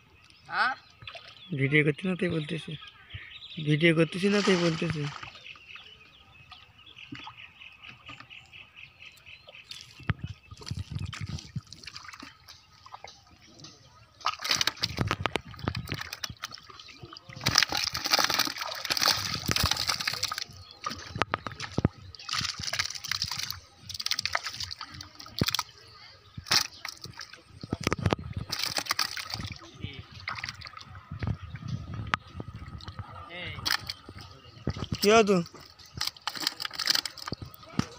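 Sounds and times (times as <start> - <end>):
shallow water sloshing and splashing: 4.1 - 5.8, 9.5 - 37.9.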